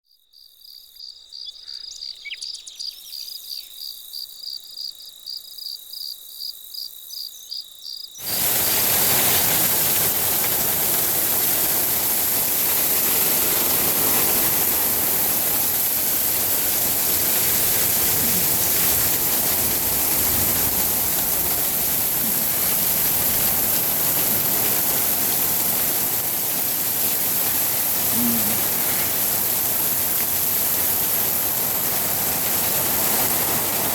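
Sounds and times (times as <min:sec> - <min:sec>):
insect chirping trill: 0:00.0 - 0:31.9
heavy rain downpour: 0:08.2 - 0:33.9.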